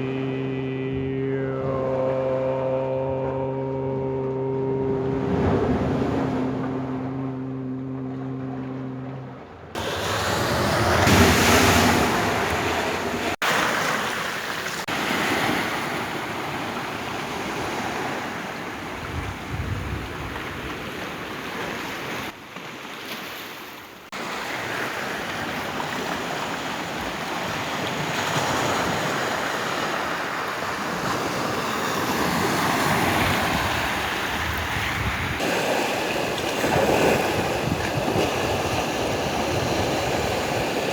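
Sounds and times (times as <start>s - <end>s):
low steady hum: 0.0s - 13.4s
sea waves washing in: 0.0s - 22.4s, 24.2s - 40.9s
wind buffeting microphone: 18.9s - 21.2s, 33.1s - 40.9s.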